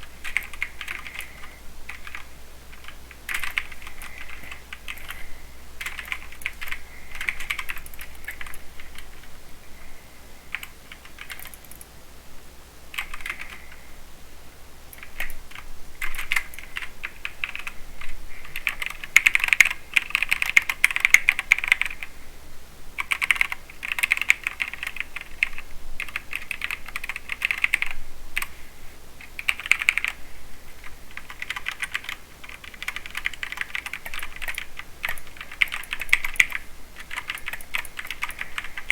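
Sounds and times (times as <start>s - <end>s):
typing on mechanical keyboard: 0.2s - 9.3s, 10.5s - 11.8s, 13.0s - 13.7s, 15.0s - 17.8s, 18.4s - 22.1s, 23.0s - 28.5s, 29.3s - 30.2s, 30.8s - 38.9s.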